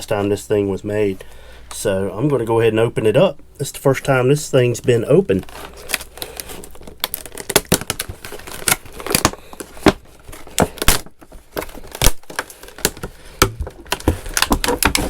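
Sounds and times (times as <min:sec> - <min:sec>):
packaging clicks and crinkles: 0:05.3 - 0:15.0.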